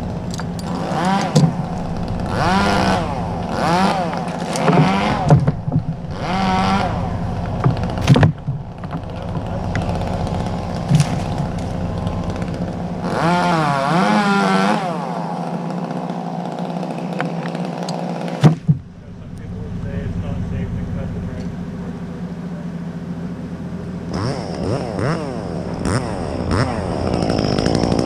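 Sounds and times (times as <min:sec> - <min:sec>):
chainsaw engine revving: 0:00.0 - 0:21.3, 0:24.0 - 0:28.0
sharp knocks: 0:00.3 - 0:13.2, 0:18.4 - 0:19.0.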